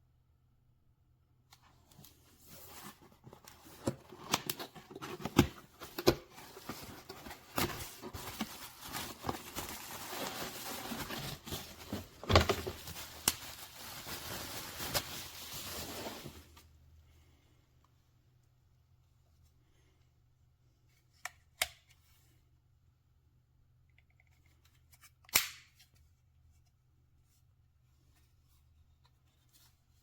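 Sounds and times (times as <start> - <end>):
rustling crinkling handling noise: 1.6 - 16.7.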